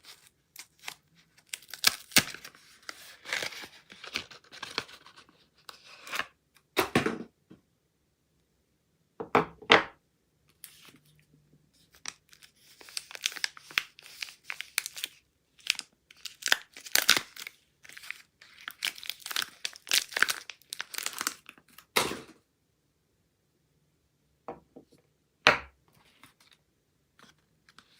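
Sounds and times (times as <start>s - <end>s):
wrapping being torn and crinkled: 0.0s - 5.3s, 11.8s - 21.9s.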